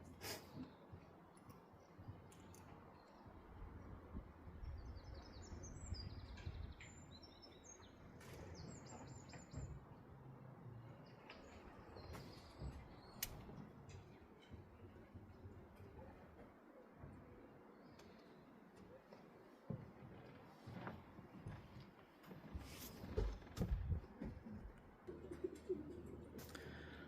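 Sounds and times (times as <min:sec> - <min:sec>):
small songbird chirping: 0:04.6 - 0:09.8.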